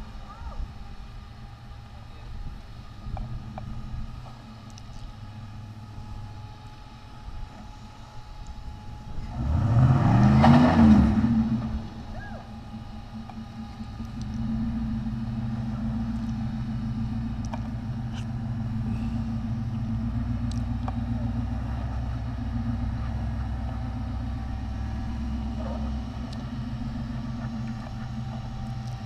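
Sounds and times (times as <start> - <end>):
engine running at low revs: 0.0 - 29.0.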